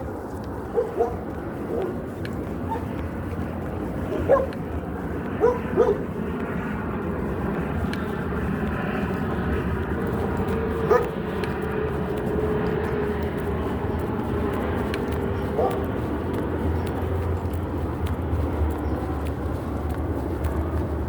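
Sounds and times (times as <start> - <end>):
dog barking: 0.7 - 2.0, 2.6 - 2.9, 4.1 - 4.6, 5.4 - 6.1, 10.8 - 11.2, 15.5 - 15.9.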